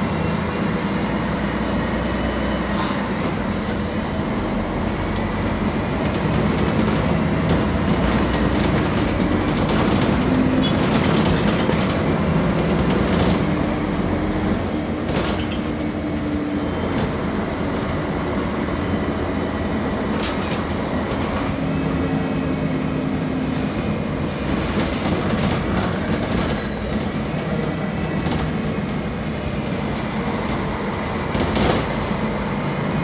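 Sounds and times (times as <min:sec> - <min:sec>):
bus diesel engine drone: 0:00.0 - 0:33.0
clicks and rattles: 0:05.5 - 0:13.6.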